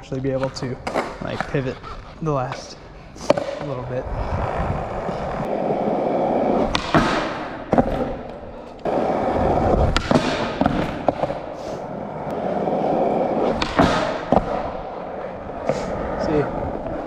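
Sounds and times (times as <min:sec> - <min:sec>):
skateboard wheels rolling: 0:00.0 - 0:17.0
skateboard clacking down: 0:05.4 - 0:11.6.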